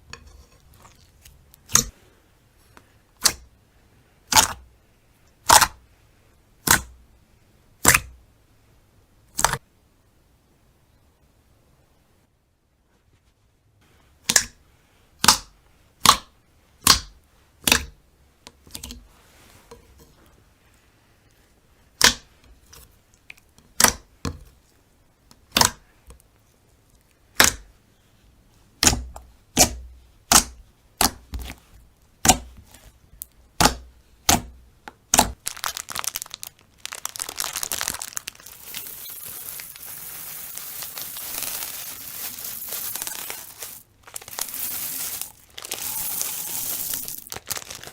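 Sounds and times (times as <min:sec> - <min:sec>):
slime crackling squish: 0:35.1 - 0:46.0, 0:47.0 - 0:47.9.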